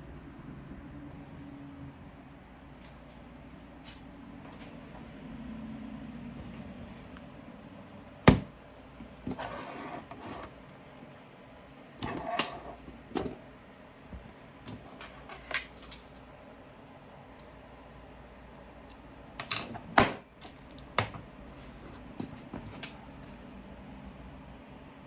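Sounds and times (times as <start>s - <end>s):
small objects scraping and rustling: 9.2s - 10.5s.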